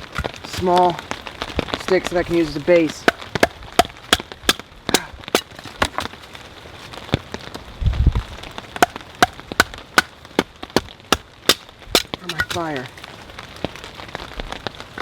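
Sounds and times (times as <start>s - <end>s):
knife chopping wood: 2.8s - 6.2s, 8.8s - 12.7s.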